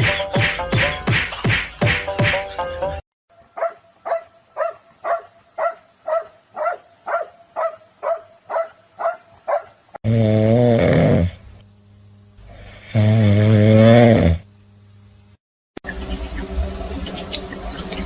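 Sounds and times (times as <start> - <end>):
dog barking: 3.5 - 9.8.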